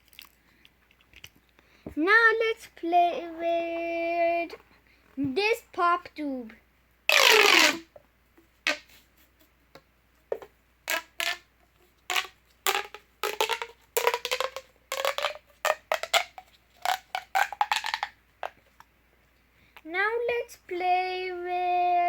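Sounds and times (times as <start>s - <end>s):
pop tube toy snapping: 7.1s - 7.9s, 8.7s - 8.9s, 10.9s - 11.5s, 12.1s - 18.6s.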